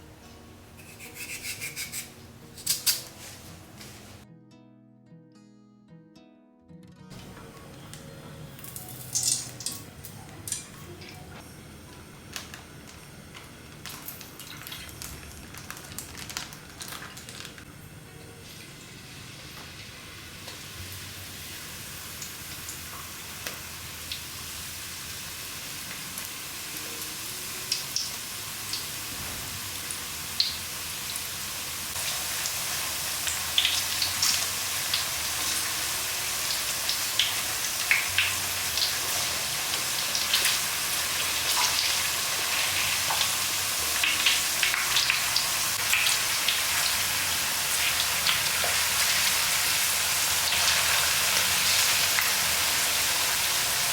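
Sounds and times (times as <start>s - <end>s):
food sizzling in hot oil: 8.6s - 9.9s, 18.4s - 53.9s.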